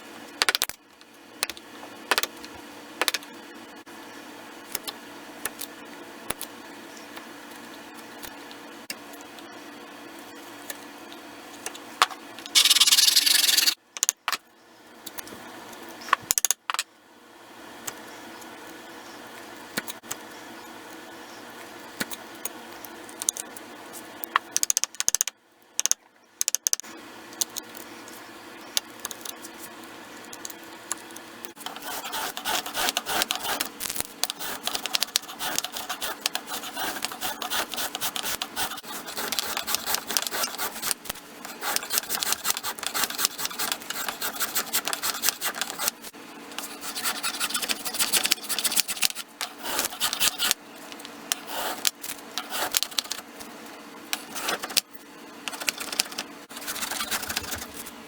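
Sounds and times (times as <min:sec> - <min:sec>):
rasp scraping wood: 0:12.6 - 0:13.8, 0:31.6 - 0:46.0, 0:46.6 - 0:50.6, 0:51.3 - 0:53.2, 0:55.5 - 0:57.8.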